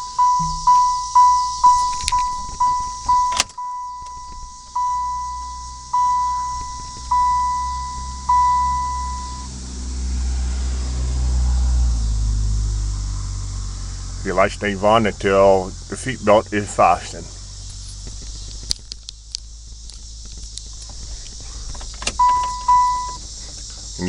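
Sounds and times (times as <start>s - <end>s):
seatbelt warning chime dinging: 0.0s - 9.5s, 22.0s - 23.2s
sharp click: 1.8s - 2.6s.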